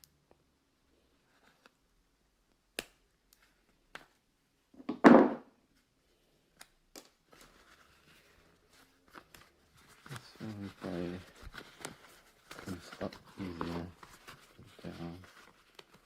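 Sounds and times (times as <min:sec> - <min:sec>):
loud knock: 0:04.9 - 0:05.4
rustling: 0:07.2 - 0:16.0.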